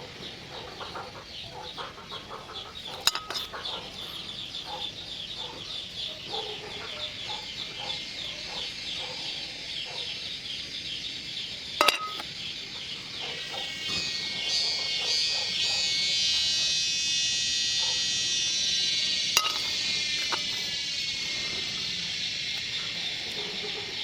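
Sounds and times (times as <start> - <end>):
chickens clucking: 0.0 - 7.9.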